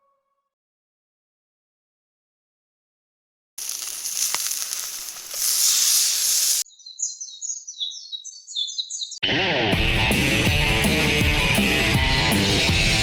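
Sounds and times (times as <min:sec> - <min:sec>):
music: 0:00.0 - 0:00.6, 0:09.2 - 0:13.0
steady high hiss: 0:03.6 - 0:06.6
bird chirping: 0:04.6 - 0:09.2.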